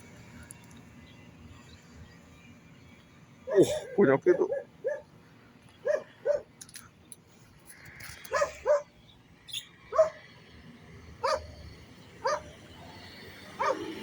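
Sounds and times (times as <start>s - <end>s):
dog barking: 3.5s - 5.1s, 5.8s - 6.5s, 8.3s - 8.9s, 9.9s - 10.2s, 11.2s - 11.5s, 12.2s - 12.5s, 13.6s - 14.0s.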